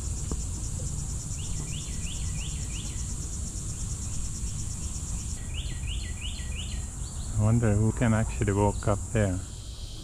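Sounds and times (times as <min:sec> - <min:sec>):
insects trilling: 0:00.0 - 0:10.0
bird singing repeated notes: 0:04.4 - 0:07.5.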